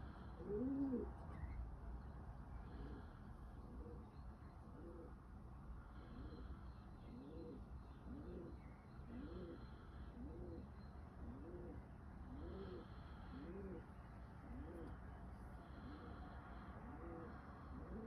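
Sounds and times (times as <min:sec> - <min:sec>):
pigeon cooing: 0:00.4 - 0:01.2, 0:07.1 - 0:15.0, 0:16.9 - 0:18.0.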